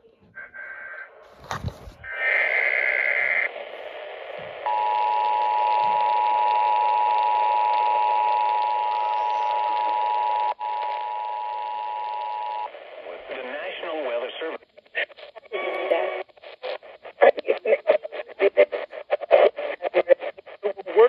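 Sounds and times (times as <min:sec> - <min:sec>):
radio hiss: 0:00.4 - 0:06.7, 0:11.8 - 0:21.0.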